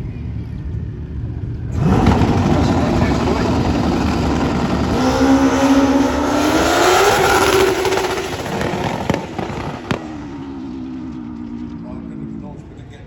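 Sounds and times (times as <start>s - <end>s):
motorcycle engine at full throttle: 0.0s - 13.0s
sharp bangs: 1.7s - 11.1s.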